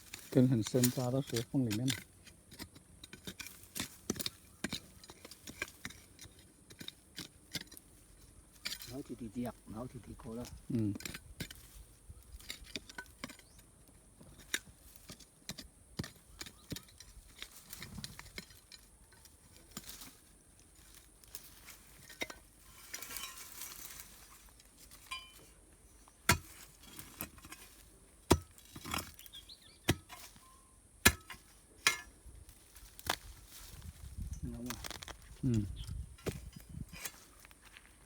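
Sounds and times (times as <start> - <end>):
metal tool striking stone: 25.0 - 25.5, 26.2 - 27.6, 28.3 - 32.1.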